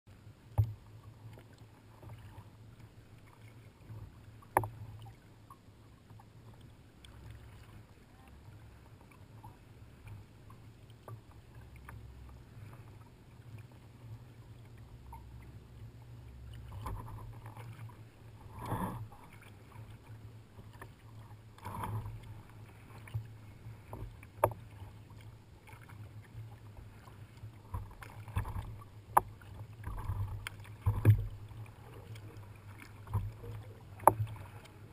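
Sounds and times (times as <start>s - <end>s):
paddles splashing in water: 0.1s - 34.9s.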